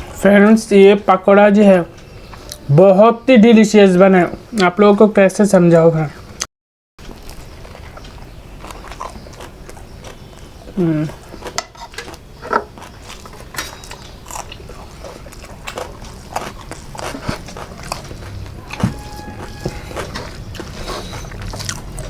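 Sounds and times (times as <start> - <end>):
chewing and crunching: 7.0 - 22.0
person humming mm: 10.8 - 11.2.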